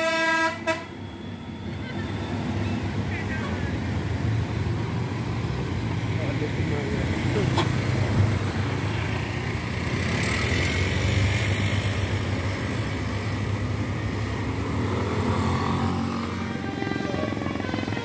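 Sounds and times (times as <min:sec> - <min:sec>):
multi-tone bus horn: 0:00.0 - 0:02.0
bus diesel engine humming: 0:00.0 - 0:18.0
road noise: 0:00.0 - 0:18.0.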